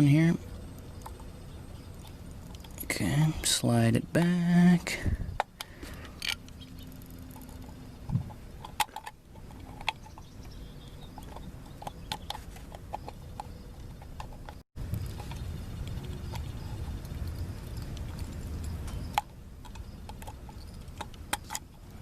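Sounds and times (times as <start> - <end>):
low steady hum: 0.0 - 22.0
small parts clicking: 5.4 - 7.8.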